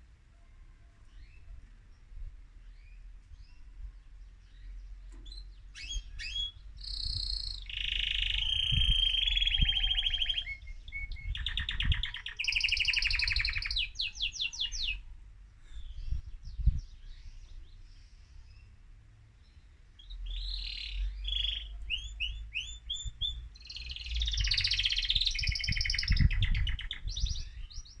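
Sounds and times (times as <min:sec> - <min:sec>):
canary singing trills: 0:02.7 - 0:15.1, 0:20.0 - 0:28.0.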